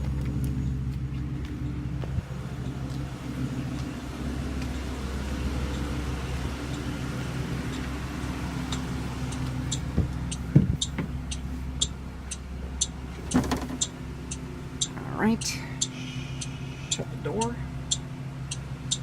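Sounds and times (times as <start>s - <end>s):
bus engine idling: 0.0s - 19.0s
hazard-light flasher ticking: 5.4s - 19.0s.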